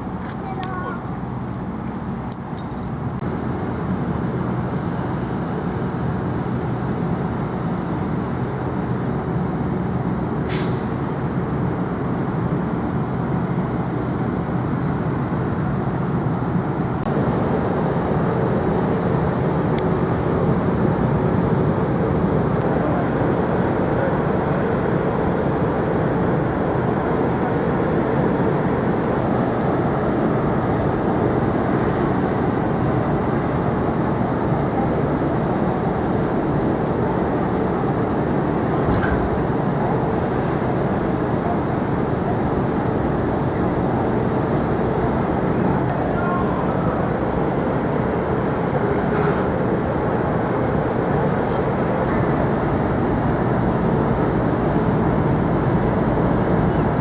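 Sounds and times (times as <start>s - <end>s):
low engine drone: 0.0s - 57.0s
brief high hiss: 10.5s - 11.0s.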